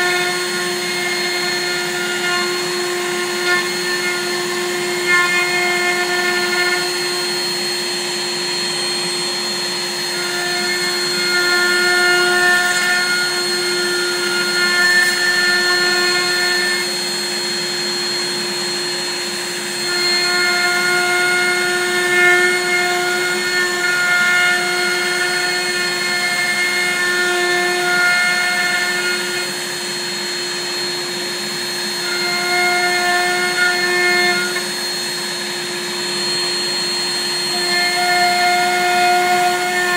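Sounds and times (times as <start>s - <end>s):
milling machine spindle whine: 0.0s - 39.9s.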